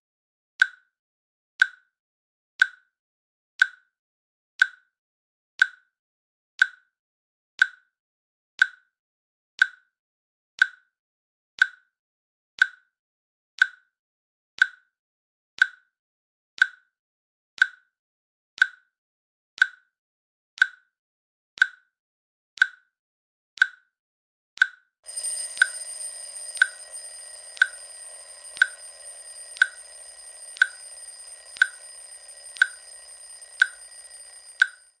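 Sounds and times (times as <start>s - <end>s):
timer alarm sounding: 25.1s - 35.0s
timer clicking: 25.1s - 35.0s.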